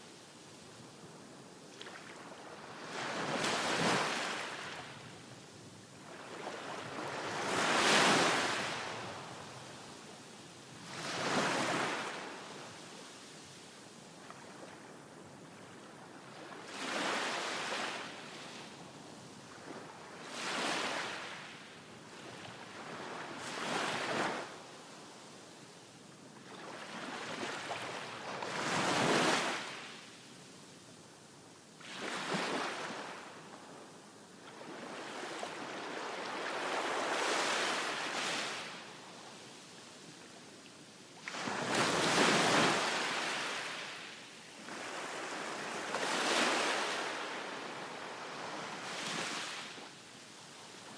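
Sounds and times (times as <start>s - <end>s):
ocean waves breaking on shore: 1.8s - 5.1s, 6.0s - 9.5s, 10.8s - 12.5s, 31.8s - 33.4s, 34.5s - 38.9s, 41.2s - 50.1s.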